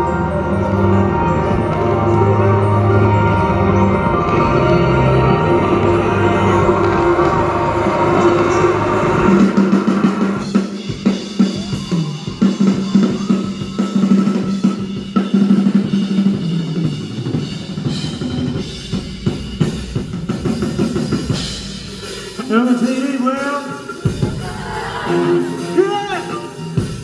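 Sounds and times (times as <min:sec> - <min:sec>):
held low note: 0:00.0 - 0:10.3
live band playing: 0:00.0 - 0:27.0
drum kit kick and snare: 0:08.2 - 0:27.0.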